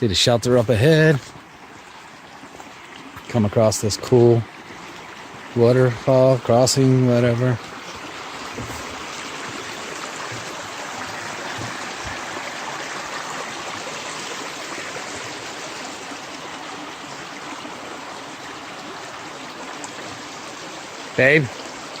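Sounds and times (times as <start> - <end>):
stream rushing over rocks: 0.0 - 22.0.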